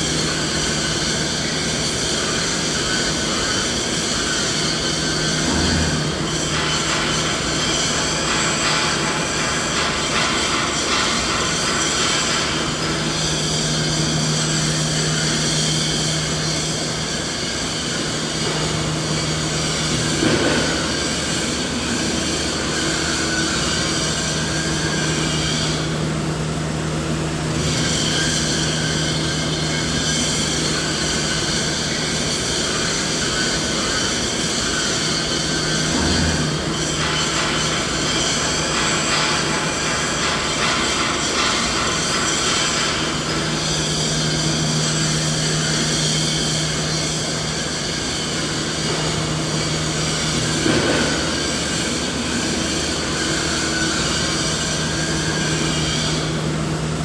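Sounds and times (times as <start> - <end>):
machine drone and hiss: 0.0 - 57.0.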